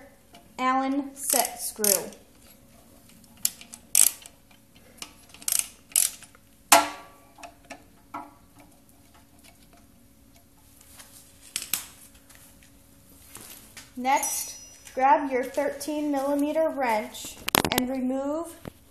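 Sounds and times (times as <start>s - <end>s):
metal hand tools clinking: 14.3s - 15.6s.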